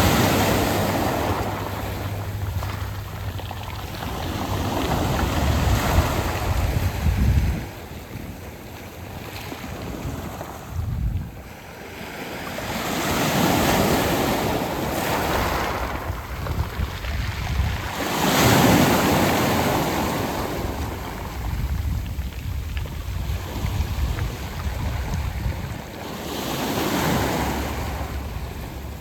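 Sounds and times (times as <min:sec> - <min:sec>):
waves washing over pebbles: 0:00.0 - 0:29.0.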